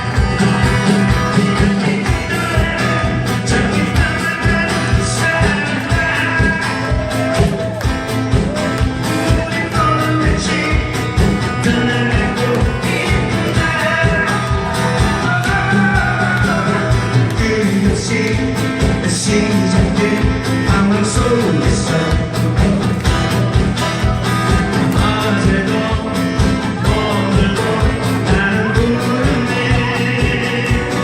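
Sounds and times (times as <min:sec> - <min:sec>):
live trot song with beat and bass: 0:00.0 - 0:31.0.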